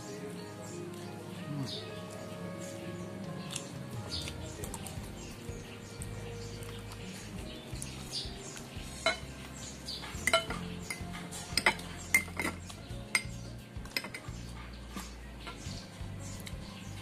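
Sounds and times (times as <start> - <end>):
cutlery clinking against dish: 9.0 - 9.3, 10.0 - 14.4.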